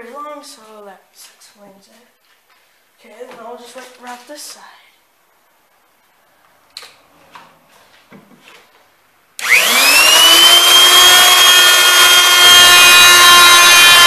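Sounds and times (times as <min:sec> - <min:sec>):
router whining: 0:09.4 - 0:14.0.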